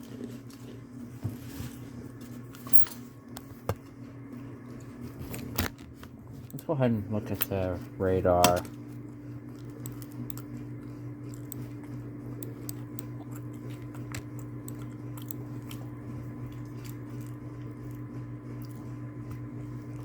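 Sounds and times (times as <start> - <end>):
person chewing food: 0.0 - 1.2, 3.2 - 5.5, 8.6 - 20.0
low electrical hum: 0.0 - 20.0.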